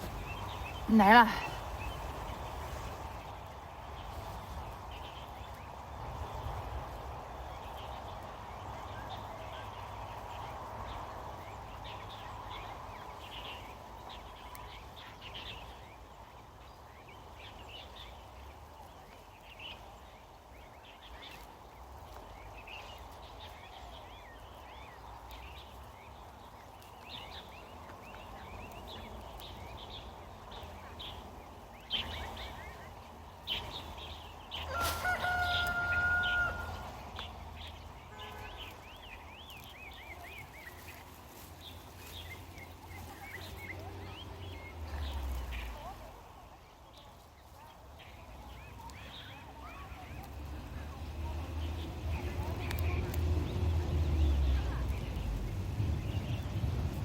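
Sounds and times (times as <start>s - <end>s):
small birds chirping: 0.0s - 57.0s
rooster crowing: 34.6s - 37.0s.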